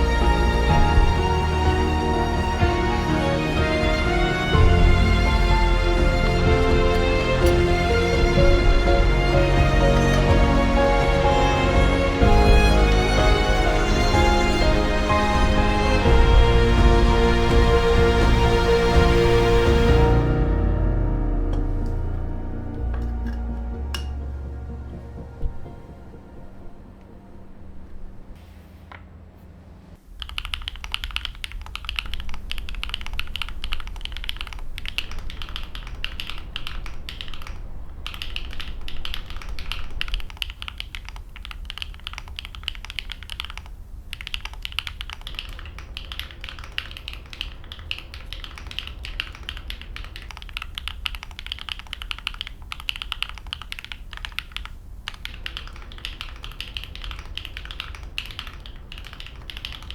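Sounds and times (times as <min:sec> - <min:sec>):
fast mechanical keyboard typing: 0:30.2 - 0:59.9.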